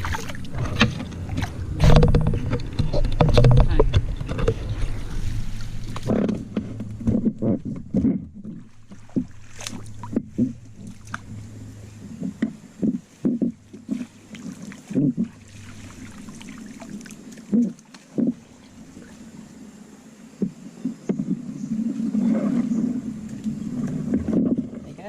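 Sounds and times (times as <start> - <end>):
knocks and thumps on boat: 0.0 - 18.5, 20.4 - 25.0
low steady hum: 0.0 - 25.0.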